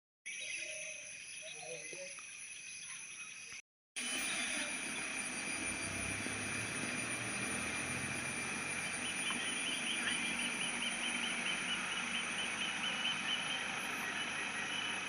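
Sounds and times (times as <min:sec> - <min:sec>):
high insect drone: 0:00.3 - 0:15.0
fast pulsing chirp: 0:04.1 - 0:15.0.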